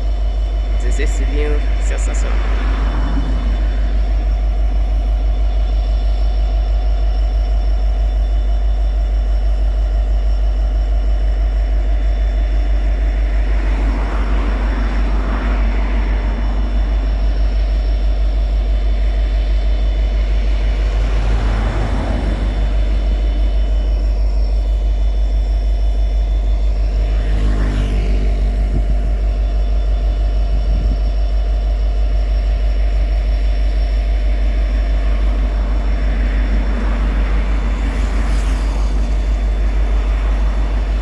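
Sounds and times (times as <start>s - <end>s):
locomotive diesel engine droning: 0.0s - 41.0s
rushing noise: 0.6s - 5.2s, 12.7s - 31.2s, 33.6s - 41.0s.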